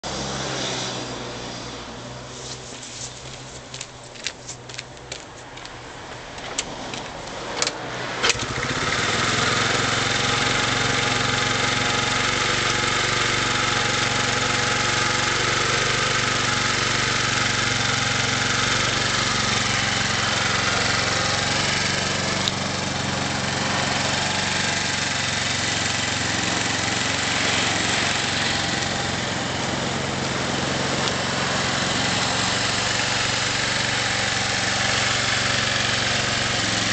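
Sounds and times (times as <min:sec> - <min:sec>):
starter clicks and ticks: 0:03.1 - 0:08.4
engine idling: 0:08.3 - 0:36.9.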